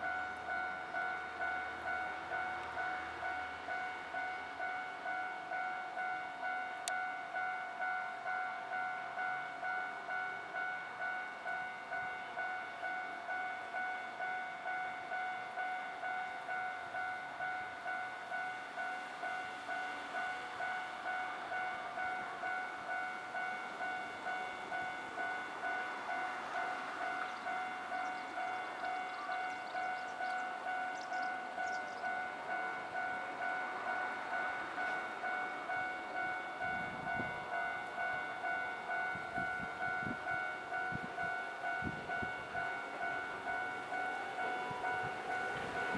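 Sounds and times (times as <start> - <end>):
train rumble and clatter: 0.0 - 45.9
level crossing bell ringing: 31.6 - 45.9.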